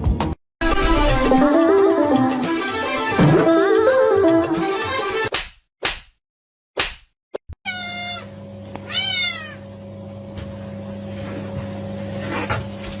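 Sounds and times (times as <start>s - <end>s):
cat meowing: 7.6s - 8.3s, 8.9s - 9.6s.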